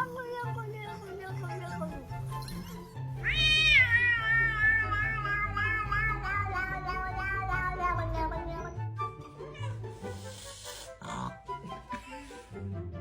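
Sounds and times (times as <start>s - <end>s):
cat long meow: 3.2s - 8.6s.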